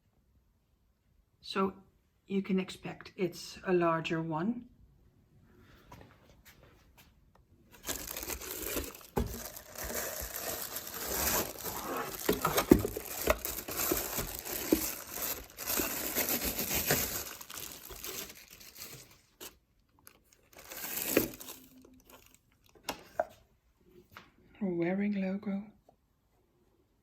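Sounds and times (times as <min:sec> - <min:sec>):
packaging crinkling and tearing: 0:07.8 - 0:23.2.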